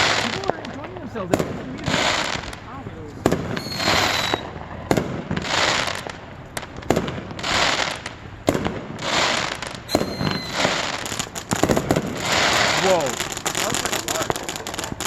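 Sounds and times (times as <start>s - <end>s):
firework crackling pops: 0.0s - 15.0s
firework hissing spray: 0.0s - 15.0s
firework high whistle: 3.5s - 4.6s, 9.0s - 15.0s.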